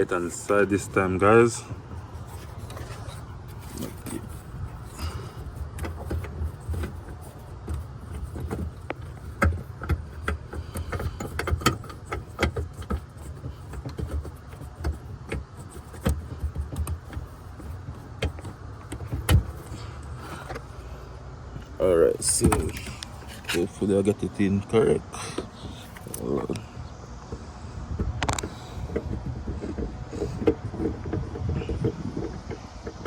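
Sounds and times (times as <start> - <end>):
low handling rumble: 0.0 - 33.0.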